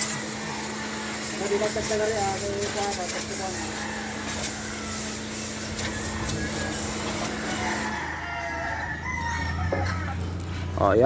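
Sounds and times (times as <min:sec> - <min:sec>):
pressure washer spray hissing: 0:00.0 - 0:08.0.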